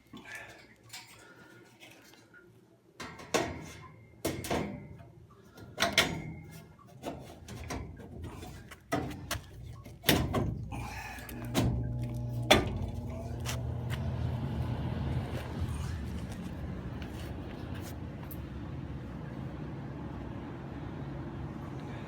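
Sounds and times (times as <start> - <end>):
blower motor humming: 10.7 - 22.0.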